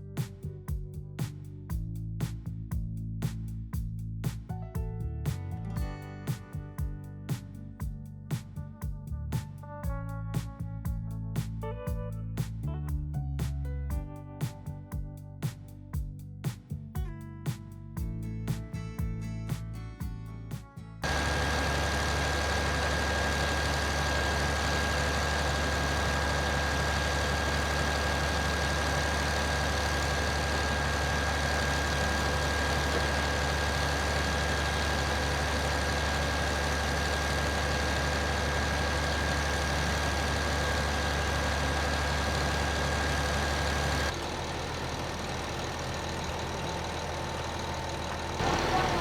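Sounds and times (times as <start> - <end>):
truck diesel engine running: 21.0 - 49.0.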